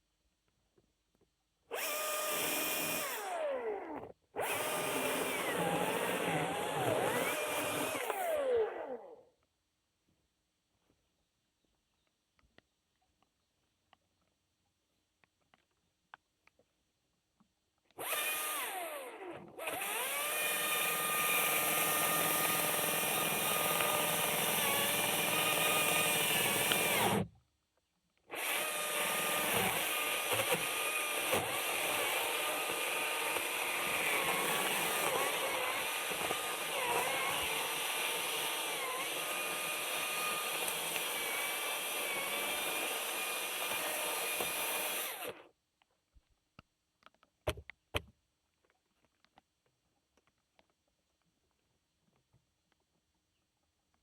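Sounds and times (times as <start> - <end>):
electric chainsaw motor whining: 1.7 - 9.2, 18.0 - 27.3, 28.3 - 45.4.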